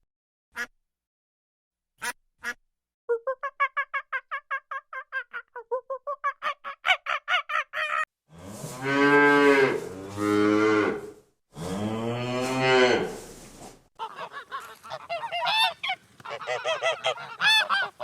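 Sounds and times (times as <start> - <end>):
duck quacks: 2.0 - 2.6, 14.0 - 18.0
cow mooing: 8.3 - 13.2.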